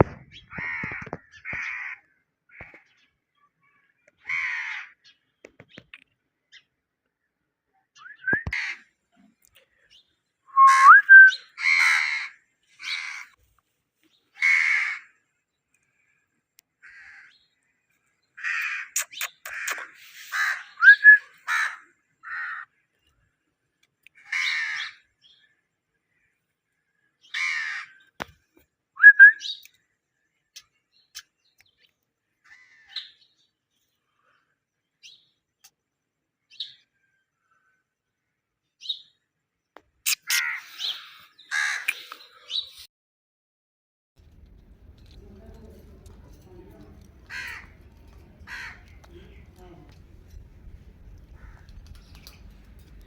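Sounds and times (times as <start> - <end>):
rising whistles: 8.0 - 8.5, 10.5 - 11.3, 29.0 - 29.4
parakeet harsh calls: 18.4 - 22.6, 40.1 - 41.9, 47.2 - 49.0.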